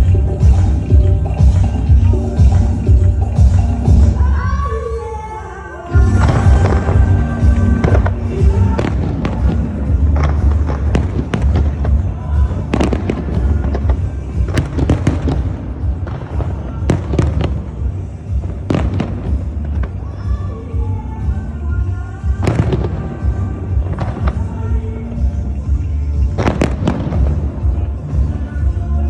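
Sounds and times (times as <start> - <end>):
loud music with heavy bass: 0.0 - 29.0
fireworks bangs and crackles: 6.0 - 21.4, 22.2 - 28.8.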